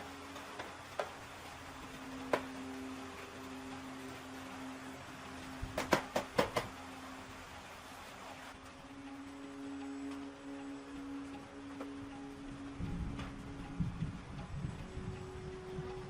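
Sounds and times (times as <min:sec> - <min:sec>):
faint steady hum: 0:00.0 - 0:16.0
knocks and clicks: 0:05.6 - 0:06.8.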